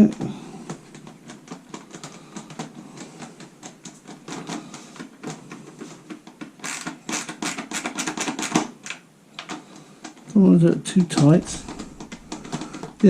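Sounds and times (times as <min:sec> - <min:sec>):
screwdriver clicking turning screw: 0:06.1 - 0:10.3.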